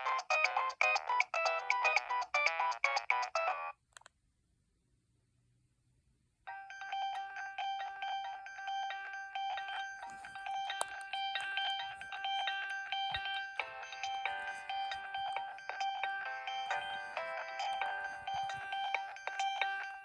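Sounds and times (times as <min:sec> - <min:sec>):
mobile phone ringtone melody: 0:06.5 - 0:20.0.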